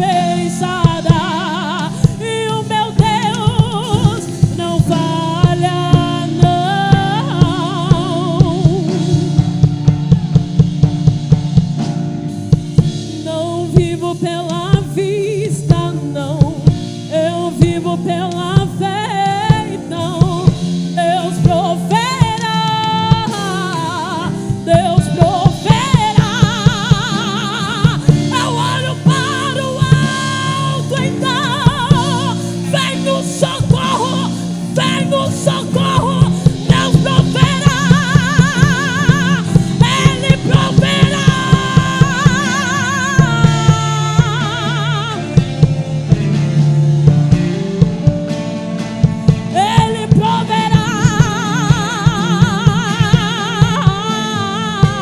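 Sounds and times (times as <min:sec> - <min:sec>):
woman singing with vibrato: 0:00.0 - 0:11.2, 0:12.7 - 0:48.4, 0:49.0 - 0:55.0
band with drum kit: 0:00.0 - 0:55.0.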